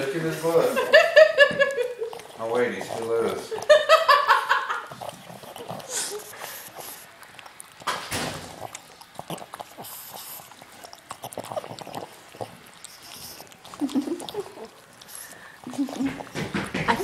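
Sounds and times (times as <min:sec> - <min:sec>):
dog sniffing: 0:00.0 - 0:04.0, 0:04.7 - 0:17.0
dog licking and smacking: 0:00.1 - 0:17.0.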